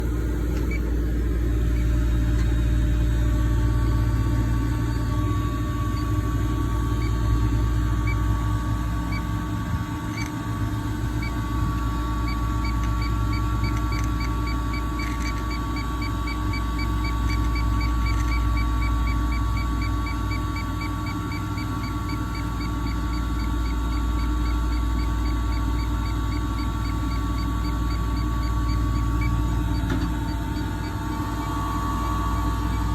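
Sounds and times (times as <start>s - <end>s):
low machine hum with tones: 0.0s - 32.9s.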